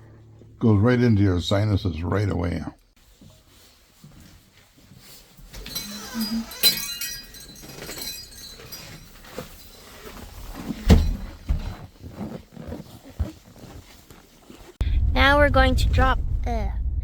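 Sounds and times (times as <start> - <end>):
dishes clinking: 5.5 - 11.8.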